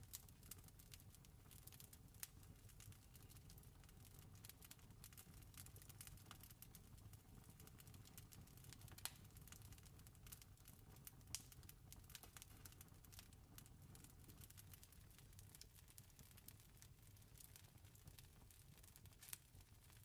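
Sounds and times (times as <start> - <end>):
campfire crackling: 0.0 - 20.0
sharp fire pops: 9.0 - 9.4.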